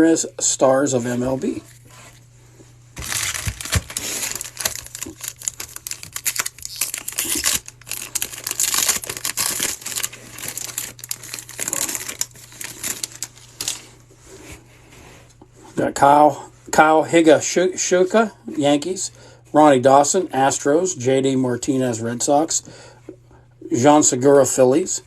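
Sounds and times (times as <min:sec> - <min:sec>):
foil wrapper crinkling and tearing: 0:03.0 - 0:13.9.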